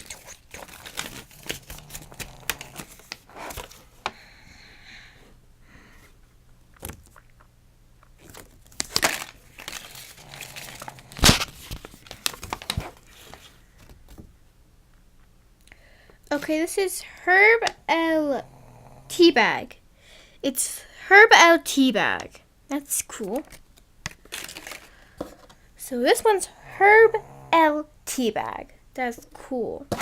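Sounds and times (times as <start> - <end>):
plastic packaging crackling: 0.0 - 3.9, 8.2 - 13.6, 24.0 - 25.0.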